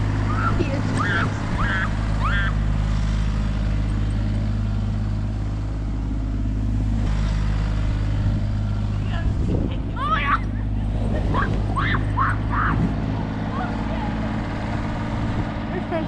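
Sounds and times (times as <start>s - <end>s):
excavator diesel engine running: 0.0s - 16.0s
high-pitched shouts: 9.9s - 10.5s, 11.4s - 12.8s.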